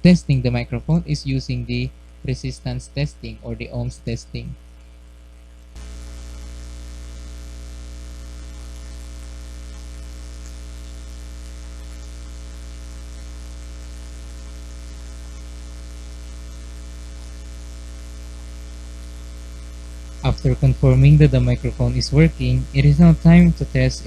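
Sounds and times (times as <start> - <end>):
electrical mains hum: 0.0 - 24.0
faint hiss: 5.7 - 24.0.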